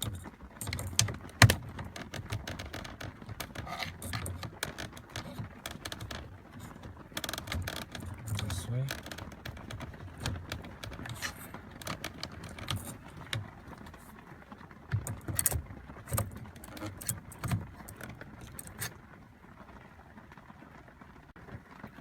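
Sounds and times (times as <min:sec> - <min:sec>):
screwdriver scraping metal: 0:03.4 - 0:06.0, 0:09.5 - 0:14.0, 0:15.0 - 0:18.9.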